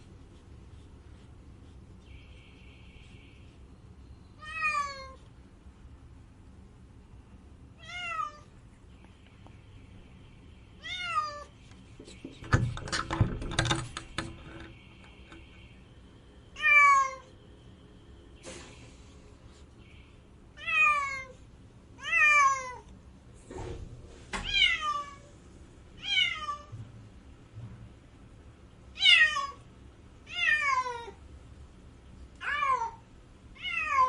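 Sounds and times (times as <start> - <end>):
cat meowing: 4.4 - 5.2, 7.8 - 8.5, 10.8 - 11.5, 32.4 - 33.0, 33.6 - 34.0.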